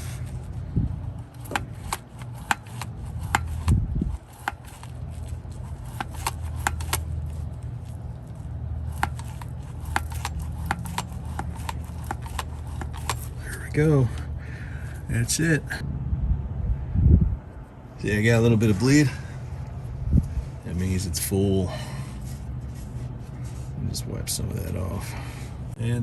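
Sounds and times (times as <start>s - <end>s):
steady low hum: 0.0s - 26.0s
grease gun clicking: 1.4s - 7.1s, 8.9s - 13.4s.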